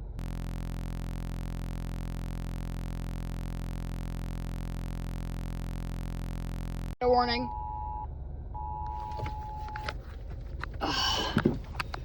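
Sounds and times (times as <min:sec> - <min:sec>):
electronic hum of held tones: 0:00.0 - 0:10.0.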